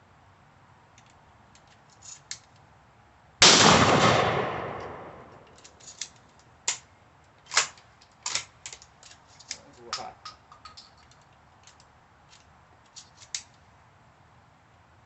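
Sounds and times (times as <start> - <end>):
gun handling clicks: 1.0 - 2.7, 3.4 - 13.6
shotgun shot echoing: 3.4 - 5.4.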